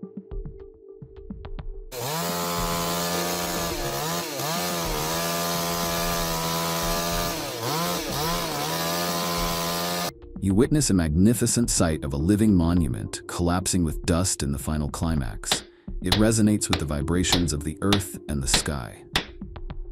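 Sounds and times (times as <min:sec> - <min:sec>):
background music: 0:00.0 - 0:19.9
chainsaw cutting wood: 0:01.9 - 0:10.1, 0:15.5 - 0:19.3.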